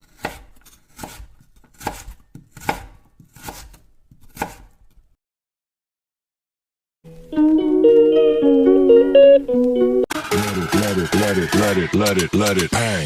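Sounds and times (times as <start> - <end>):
knife chopping on cutting board: 0.0 - 4.9.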